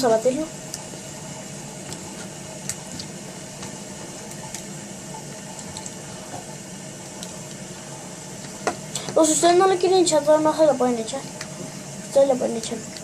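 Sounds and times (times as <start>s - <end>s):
slime stirred wet swishing: 0.7s - 8.6s.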